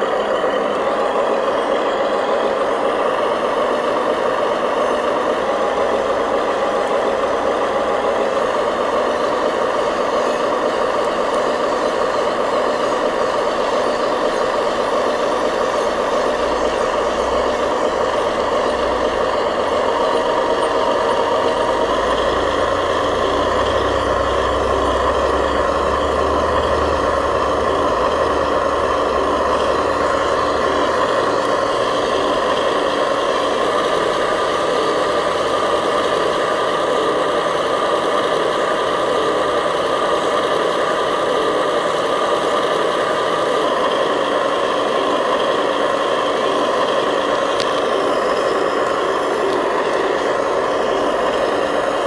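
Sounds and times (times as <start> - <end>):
model truck motor whining: 0.0 - 52.0.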